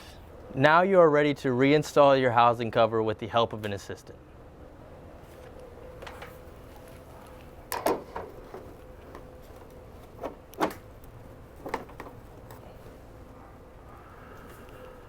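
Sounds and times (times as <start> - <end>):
cover clicking and knocking: 7.7 - 10.9, 11.6 - 12.6.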